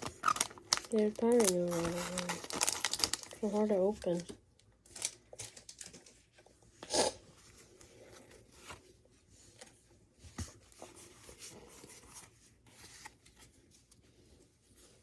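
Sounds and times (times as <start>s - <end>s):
foil pack and cards rustling: 0.0s - 4.3s, 4.9s - 6.3s.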